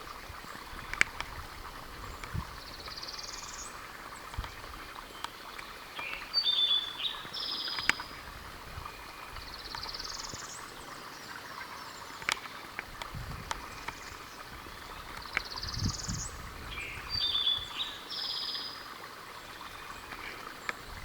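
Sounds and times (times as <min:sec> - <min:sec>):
songbirds singing: 0:00.3 - 0:21.0
faint clicks: 0:00.6 - 0:01.4, 0:03.8 - 0:06.3, 0:07.2 - 0:08.2, 0:12.2 - 0:14.4, 0:15.0 - 0:16.2, 0:20.0 - 0:21.0.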